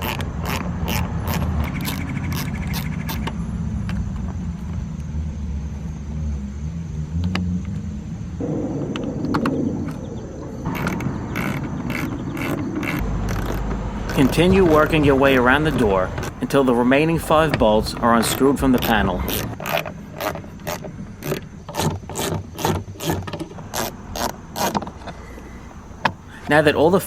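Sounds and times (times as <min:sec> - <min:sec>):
low rumble: 0:03.4 - 0:19.6.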